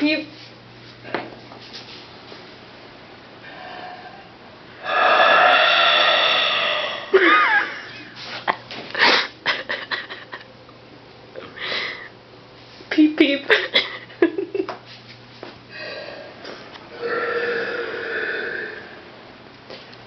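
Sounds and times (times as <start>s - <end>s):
person burping: 4.8s - 7.6s, 16.9s - 19.0s.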